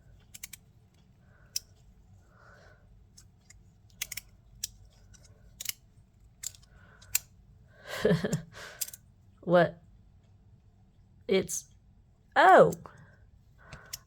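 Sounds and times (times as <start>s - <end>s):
clicks of fidget toy parts: 0.2s - 1.9s, 3.2s - 5.8s, 6.4s - 7.4s, 8.2s - 9.0s, 13.7s - 14.0s.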